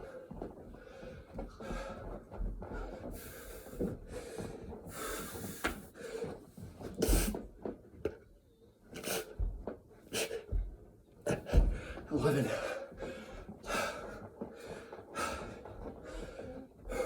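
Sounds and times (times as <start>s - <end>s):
person breathing hard: 0.0s - 6.4s, 11.3s - 17.0s
hands and feet thudding on floor: 10.4s - 12.1s.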